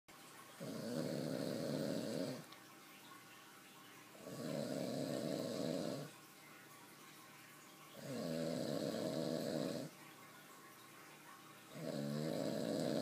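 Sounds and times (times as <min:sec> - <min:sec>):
loud rasping snoring: 0:00.6 - 0:02.5, 0:04.2 - 0:06.1, 0:08.0 - 0:09.9, 0:11.7 - 0:13.0.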